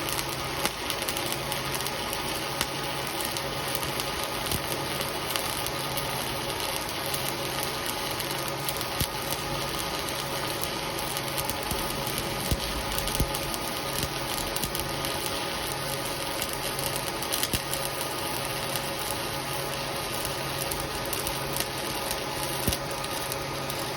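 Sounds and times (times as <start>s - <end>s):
machine humming: 9.4s - 17.2s.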